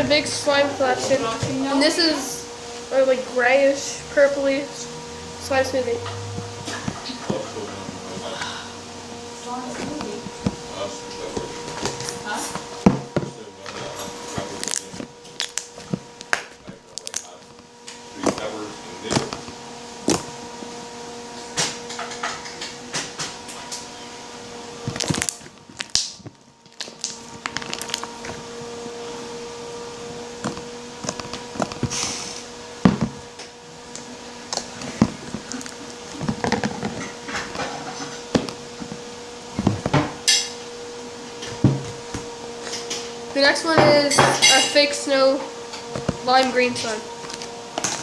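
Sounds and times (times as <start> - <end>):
steady background hum: 0.0 - 48.0
slime squishing with sticky pops: 14.4 - 17.6, 24.8 - 28.4, 33.9 - 37.6.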